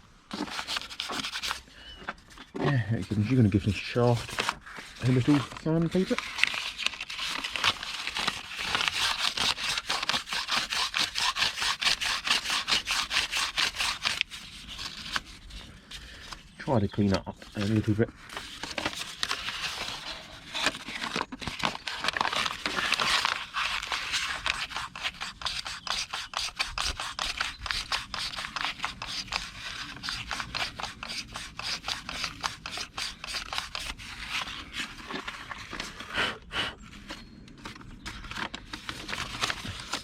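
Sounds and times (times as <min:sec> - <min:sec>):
sandpaper scraping metal shaft: 0:07.8 - 0:15.1, 0:22.5 - 0:34.6.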